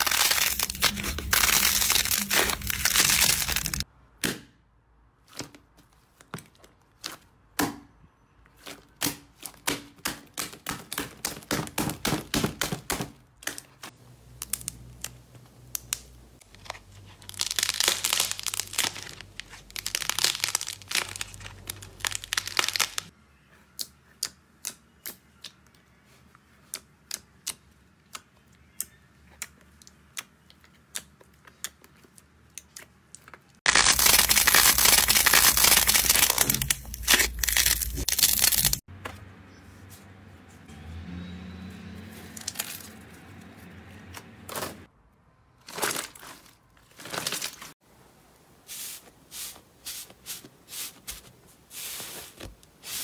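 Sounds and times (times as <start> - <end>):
slime crackling and popping: 0.0 - 3.8, 14.3 - 23.1, 33.6 - 38.8.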